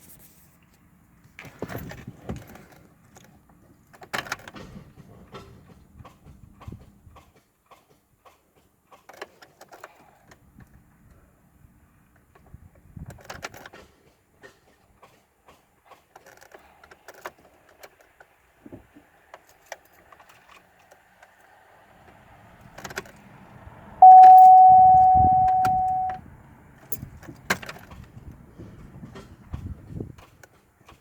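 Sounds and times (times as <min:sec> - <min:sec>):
car keys jangling: 0:24.0 - 0:26.2
loud steady tone: 0:24.0 - 0:26.2.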